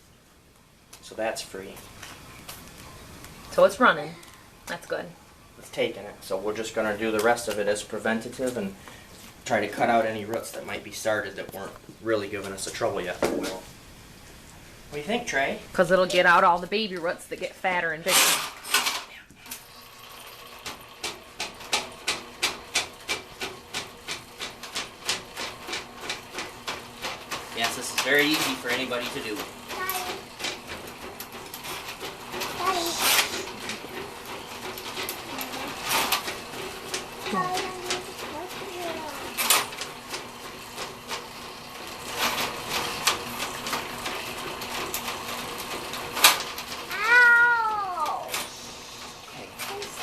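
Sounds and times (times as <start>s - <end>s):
drain auger motor hum: 19.5s - 50.0s
cable clicking and rattling: 21.0s - 47.3s.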